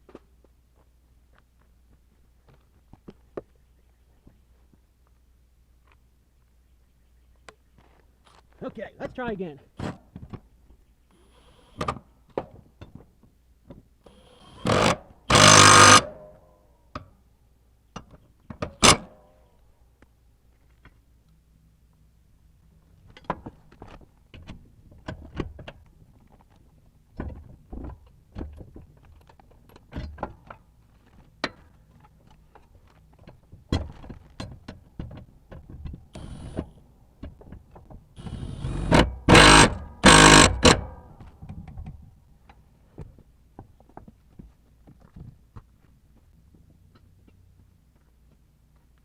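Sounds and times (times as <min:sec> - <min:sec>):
impact wrench bursts: 0:14.2 - 0:16.3, 0:18.7 - 0:19.1, 0:36.2 - 0:36.7, 0:38.2 - 0:41.0.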